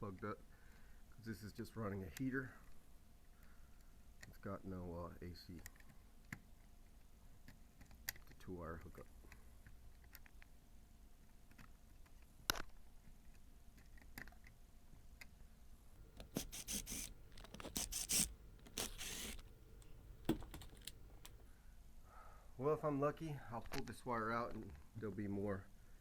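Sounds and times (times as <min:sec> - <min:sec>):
small clicks: 0:16.0 - 0:21.4
scraping and rustling of wires: 0:16.0 - 0:21.5
sharp click: 0:16.1 - 0:21.4.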